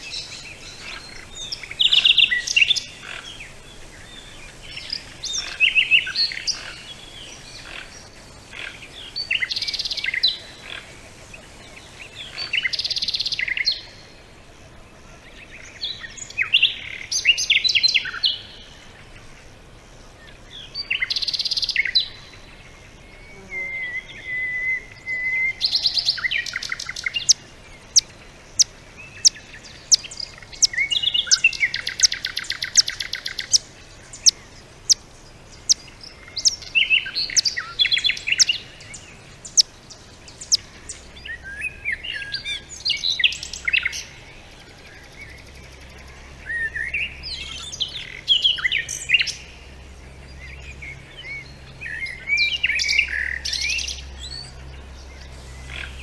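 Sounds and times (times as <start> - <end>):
songbirds warbling: 0.0 - 13.6, 26.2 - 44.1, 44.7 - 56.0
bird trill: 26.9 - 41.4
bird chips: 27.0 - 41.2.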